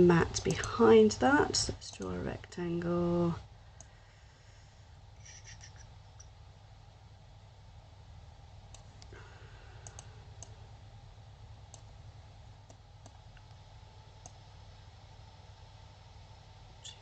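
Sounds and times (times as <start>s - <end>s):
faint low hum: 0.0s - 17.0s
computer mouse clicking: 9.8s - 10.5s, 11.7s - 11.9s, 12.6s - 13.6s, 14.2s - 14.4s.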